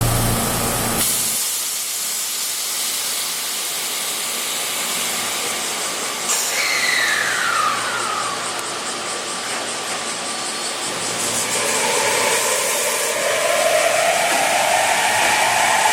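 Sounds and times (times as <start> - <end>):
train wheels hissing on rail: 0.0 - 15.9
wheel squeal sliding down: 6.3 - 8.6.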